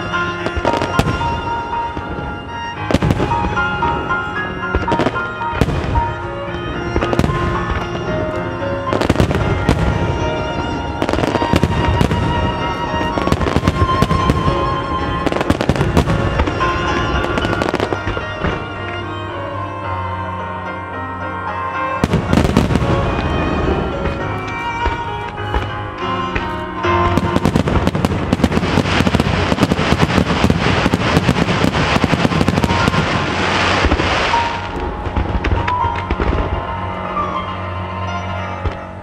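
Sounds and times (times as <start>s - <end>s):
firework bursts and crackles: 0.0s - 18.8s, 22.0s - 36.8s
loud music: 0.0s - 39.0s.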